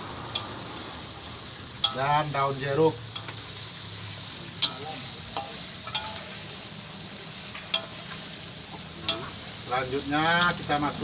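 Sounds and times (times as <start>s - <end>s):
spices sizzling in hot oil: 0.0s - 11.0s
utensil clicking against pan: 0.3s - 0.6s, 4.6s - 6.3s, 7.5s - 9.4s.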